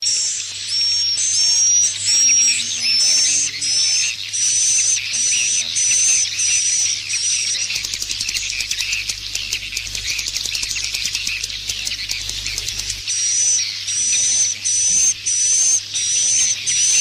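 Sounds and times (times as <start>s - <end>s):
chorus of swiftlet twitters: 0.0s - 17.0s
rapid clicking chatter: 0.2s - 17.0s.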